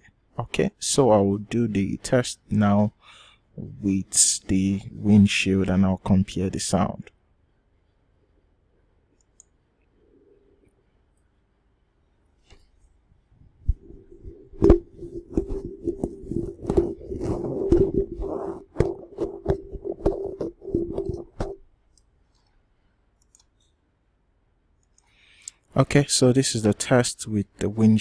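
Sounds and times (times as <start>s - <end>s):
low hum: 12.6s - 21.7s
microphone handling knocks and scrapes: 13.6s - 21.6s.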